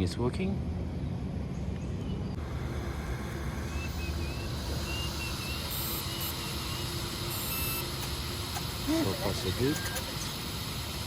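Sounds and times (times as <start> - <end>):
faint electronic beeps: 3.7 - 8.2, 9.0 - 10.4.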